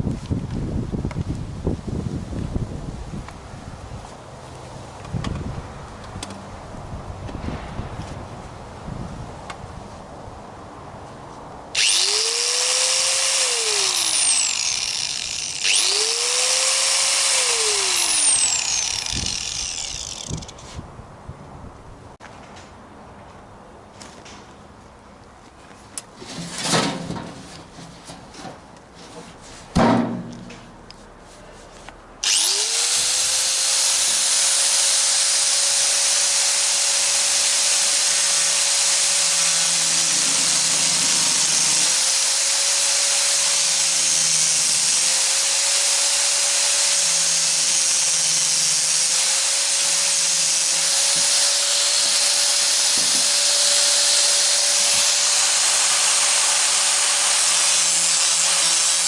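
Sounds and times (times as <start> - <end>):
electric power tool whining: 11.8 - 20.6, 32.2 - 59.0
knocks: 29.8 - 30.6.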